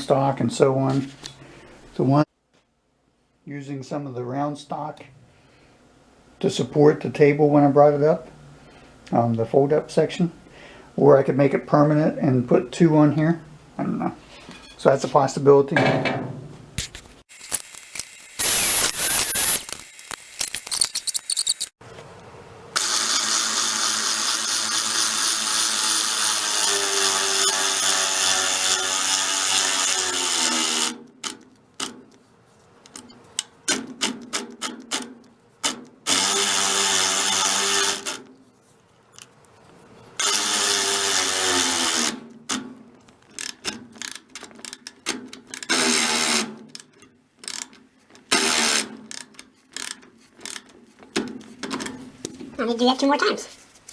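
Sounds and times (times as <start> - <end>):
electric power tool running: 17.3 - 21.7, 22.8 - 30.9, 36.1 - 38.2
clicks and handling knocks: 42.3 - 52.6.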